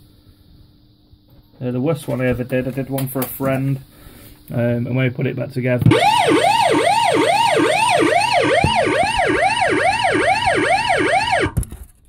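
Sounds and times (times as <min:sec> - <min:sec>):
electronic alarm wailing: 0:05.9 - 0:11.6.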